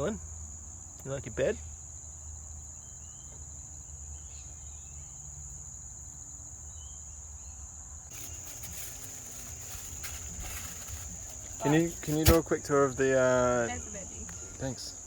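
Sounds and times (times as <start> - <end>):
high-pitched insect chorus: 0.0 - 15.0
light rustling and clicking: 8.1 - 12.5.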